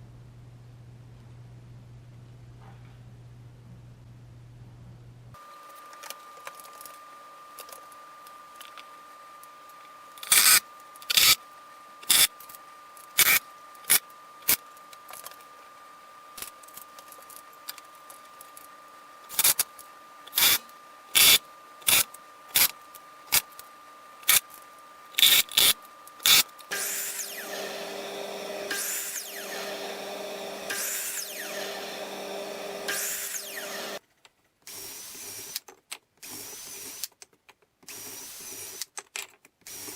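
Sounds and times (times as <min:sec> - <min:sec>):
power drill running: 0:25.2 - 0:34.0.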